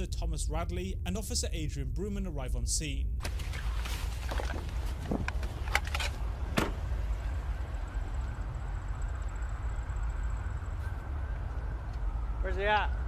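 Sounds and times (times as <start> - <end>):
faint high whine: 0.0 - 13.0
vehicle rumble: 3.2 - 13.0.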